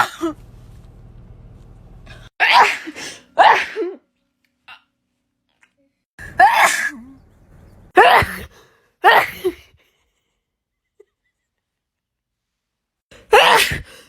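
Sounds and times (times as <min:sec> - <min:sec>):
person sneezing: 0:02.4 - 0:04.0, 0:13.3 - 0:14.0.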